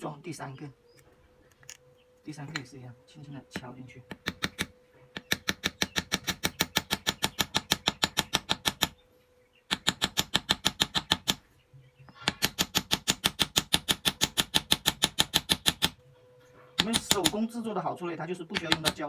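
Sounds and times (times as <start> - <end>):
rapid tapping on bamboo: 3.6 - 9.0, 9.7 - 11.4, 12.3 - 16.0, 16.8 - 17.4, 18.6 - 19.0.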